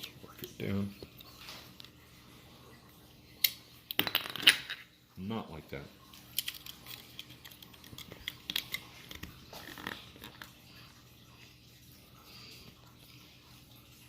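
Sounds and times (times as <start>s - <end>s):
plastic toy parts clicking: 6.3s - 9.2s.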